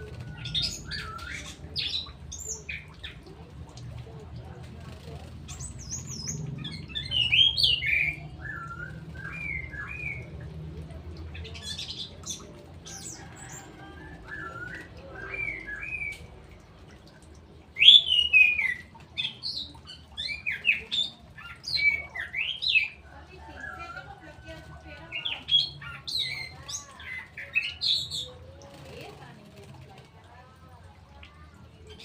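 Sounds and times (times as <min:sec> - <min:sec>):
bird singing whistled phrases: 0:07.0 - 0:10.3.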